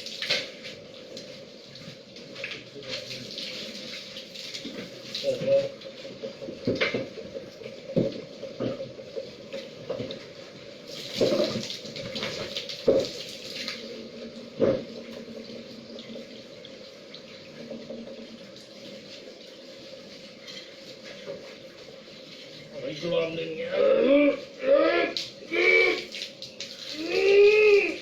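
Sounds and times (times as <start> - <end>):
water running and splashing: 0.0 - 23.4, 24.4 - 28.0
sharp knocks and clatters: 6.4 - 10.2.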